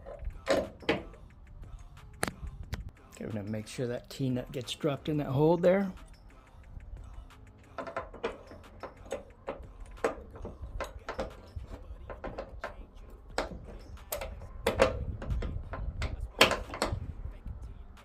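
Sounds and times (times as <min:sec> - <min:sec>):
small metal clicks and taps: 0:05.9 - 0:17.0
metal knock: 0:07.8 - 0:17.1.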